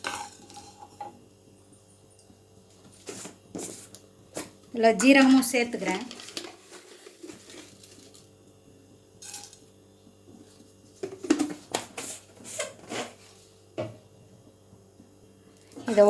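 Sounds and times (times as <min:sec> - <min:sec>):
spoon scraping a pan: 0:00.0 - 0:01.1.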